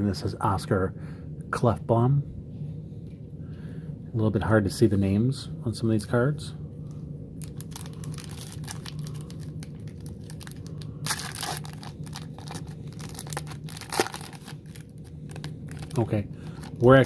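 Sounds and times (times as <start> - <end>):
wrapper crinkling and tearing: 7.4 - 17.0.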